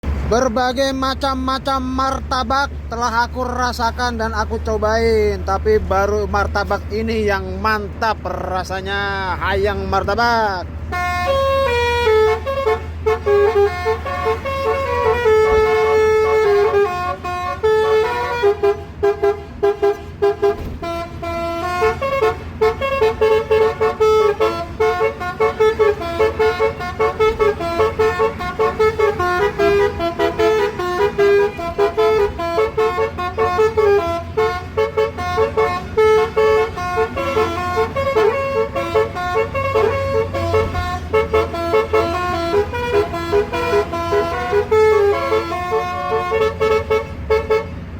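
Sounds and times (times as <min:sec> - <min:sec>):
musical vehicle horn playing a tune: 0:10.8 - 0:47.9.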